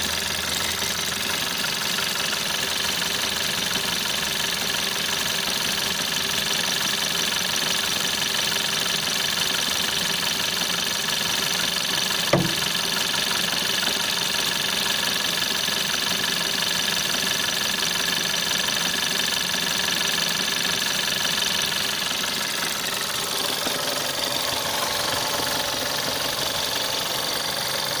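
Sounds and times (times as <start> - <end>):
car engine idling: 0.0 - 6.5, 9.0 - 19.7, 20.9 - 28.0
drum-like knocking: 12.3 - 12.9
sharp click: 12.3 - 12.9.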